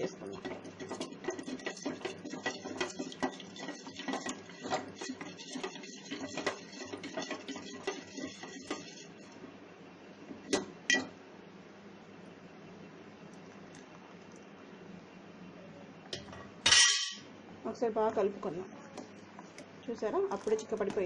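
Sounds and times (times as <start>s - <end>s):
spoon stirring in a bowl: 0.0s - 9.4s.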